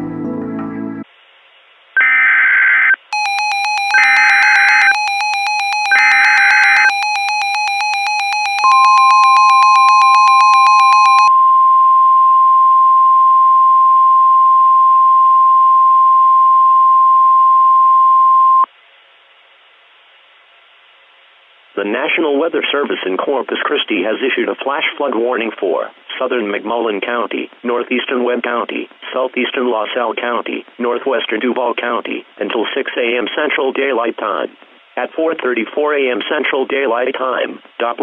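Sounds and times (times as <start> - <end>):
steady warning alarm tone: 2.0 - 14.0
rapid electronic beeping: 3.2 - 11.3.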